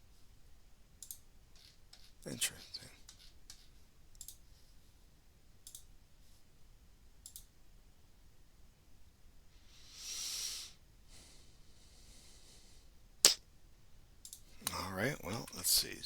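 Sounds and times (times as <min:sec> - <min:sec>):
faint computer clicks: 0:01.0 - 0:04.6, 0:05.6 - 0:05.9, 0:07.2 - 0:07.5.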